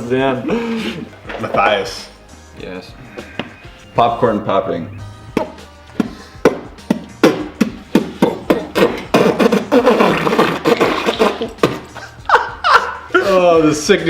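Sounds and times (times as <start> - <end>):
mouth pops and clicks: 4.8 - 12.1.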